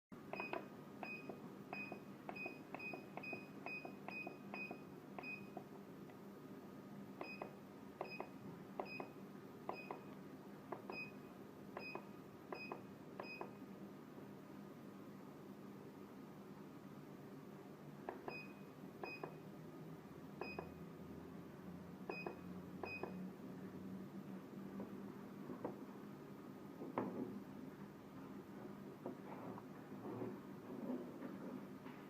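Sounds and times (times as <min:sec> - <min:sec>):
faint steady hum: 0:00.2 - 0:32.0
button clicks with high beeps: 0:00.3 - 0:05.6, 0:07.2 - 0:10.1, 0:10.8 - 0:11.2, 0:11.8 - 0:13.6, 0:18.1 - 0:19.4, 0:20.4 - 0:20.8, 0:22.1 - 0:23.2.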